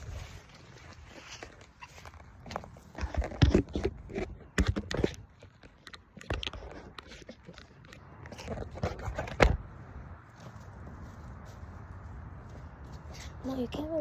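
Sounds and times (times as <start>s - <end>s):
camera handling knocks and scrapes: 1.4s - 9.7s.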